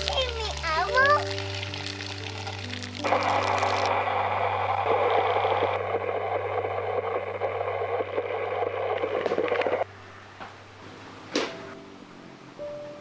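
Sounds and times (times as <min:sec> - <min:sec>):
running water: 0:00.0 - 0:10.3.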